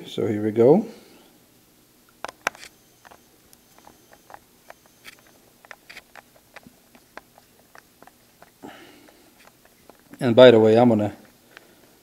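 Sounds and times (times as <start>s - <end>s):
screwdriver clicking on screws: 2.2s - 10.2s.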